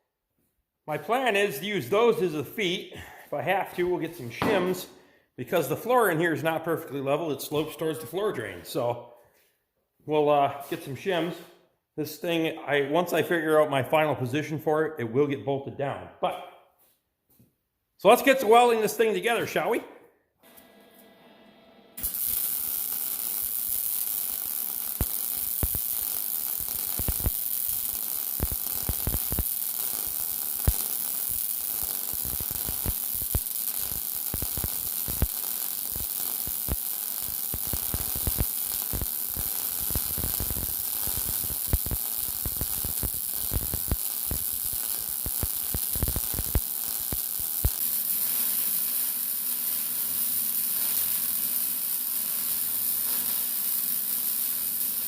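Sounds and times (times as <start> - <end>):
arc welding sizzling hiss: 22.0 - 55.0
welding crackling pops: 22.0 - 55.0.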